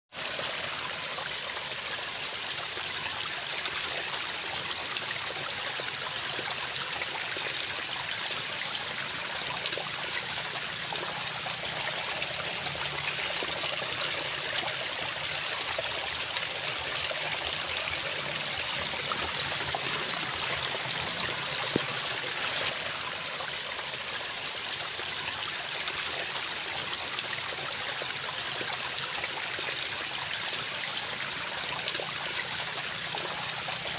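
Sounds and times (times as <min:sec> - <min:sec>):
waterfall rushing and splashing: 0:09.7 - 0:25.1.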